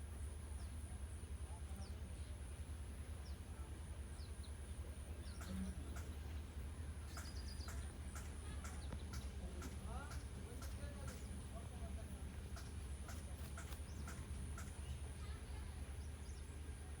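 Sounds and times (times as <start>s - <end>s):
birds chirping: 0.2s - 17.0s
quick ticks: 12.6s - 14.8s.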